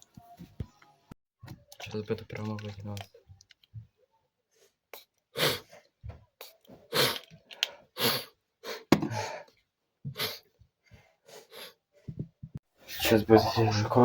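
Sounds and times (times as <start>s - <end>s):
sharp hissing through nose: 8.0s - 8.8s.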